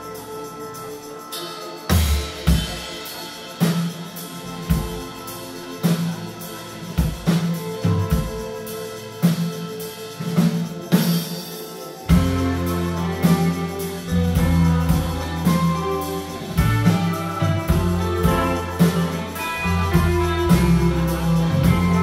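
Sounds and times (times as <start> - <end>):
rock band playing: 0.0 - 22.0
drum kit hits: 1.9 - 5.2
heavy bass line: 12.1 - 22.0.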